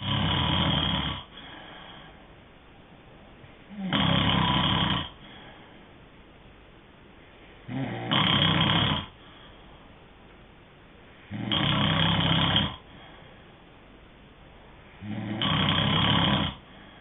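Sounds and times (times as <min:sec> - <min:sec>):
person snoring: 0:00.0 - 0:02.1, 0:03.7 - 0:05.4, 0:07.6 - 0:09.2, 0:11.3 - 0:12.9, 0:15.0 - 0:16.7
quiet breath hiss: 0:00.0 - 0:17.0.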